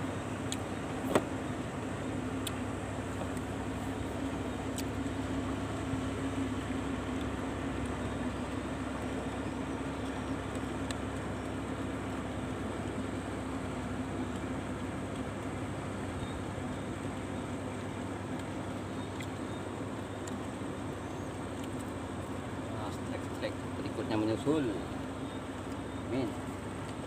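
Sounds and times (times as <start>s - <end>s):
low engine drone: 0.0s - 27.0s
faint clicks: 21.5s - 22.0s.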